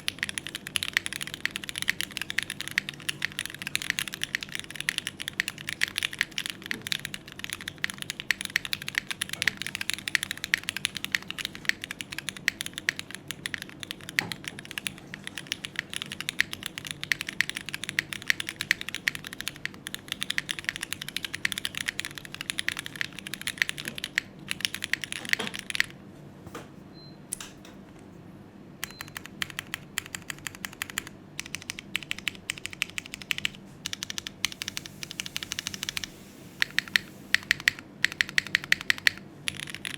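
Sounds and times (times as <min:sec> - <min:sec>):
mechanical keyboard typing: 0:00.0 - 0:25.9, 0:28.8 - 0:39.9.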